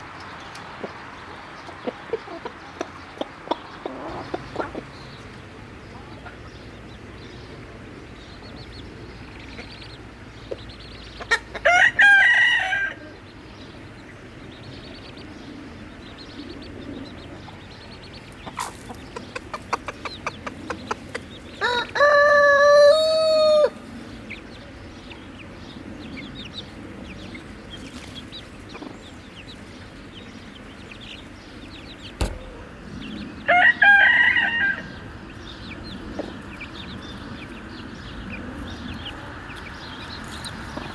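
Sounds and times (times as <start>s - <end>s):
hens clucking softly: 1.6s - 13.0s, 18.2s - 24.0s
rooster crowing: 11.6s - 13.2s, 21.6s - 23.8s.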